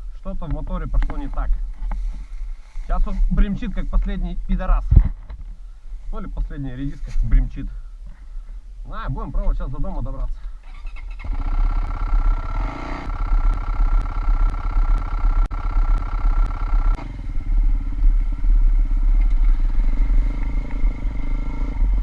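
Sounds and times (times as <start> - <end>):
faint regular ticks: 11.0 - 17.0
motorcycle engine knocking: 11.3 - 17.0.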